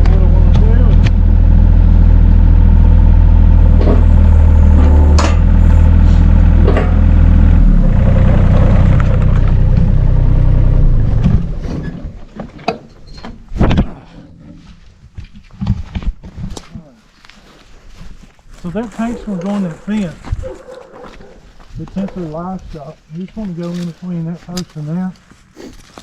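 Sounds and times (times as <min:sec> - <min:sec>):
vehicle engine idling: 0:00.0 - 0:12.4.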